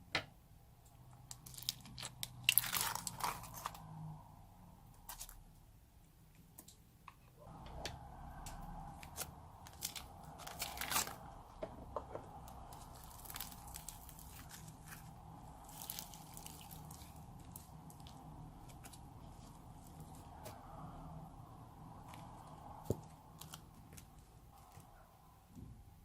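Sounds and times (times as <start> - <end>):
crunchy slime crackling: 1.2 - 3.9, 8.8 - 11.5, 12.3 - 21.0, 22.0 - 24.8.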